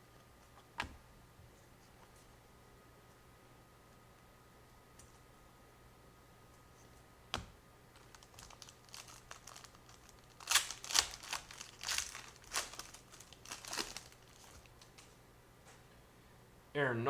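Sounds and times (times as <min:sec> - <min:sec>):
foil wrapper crinkling: 0:07.9 - 0:15.2.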